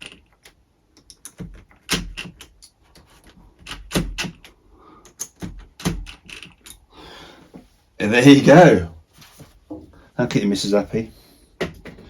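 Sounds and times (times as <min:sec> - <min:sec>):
hard objects clicking and knocking: 0:00.0 - 0:06.9, 0:11.6 - 0:12.0.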